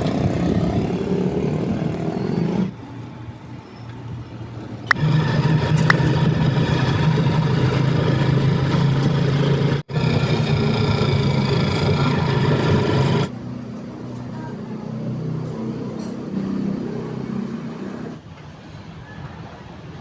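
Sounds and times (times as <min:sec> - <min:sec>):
vehicle engine running: 0:00.0 - 0:14.9
road noise: 0:00.0 - 0:20.0.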